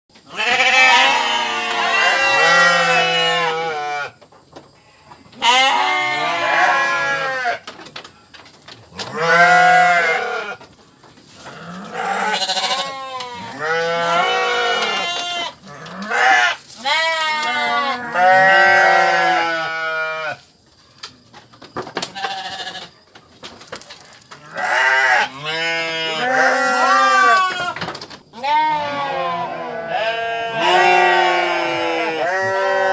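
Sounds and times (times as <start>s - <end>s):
sheep bleating: 0.3s - 4.2s, 5.4s - 7.6s, 9.1s - 10.6s, 11.5s - 20.4s, 22.2s - 22.9s, 24.4s - 27.8s, 28.4s - 32.9s.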